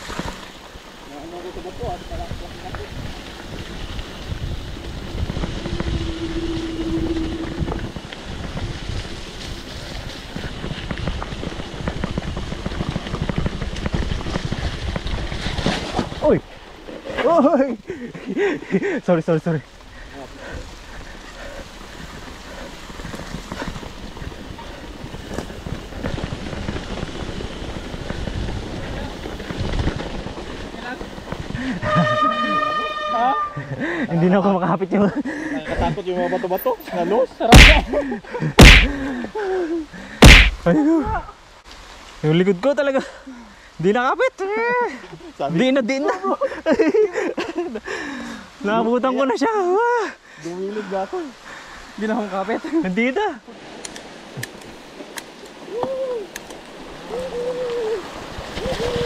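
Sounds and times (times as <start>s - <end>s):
bike rolling over rocky trail: 0.0s - 17.6s, 20.7s - 32.1s
wind buffeting microphone: 1.5s - 16.5s, 20.0s - 32.2s, 53.6s - 59.0s
low rumble: 3.0s - 10.3s
steady whine: 4.6s - 8.6s.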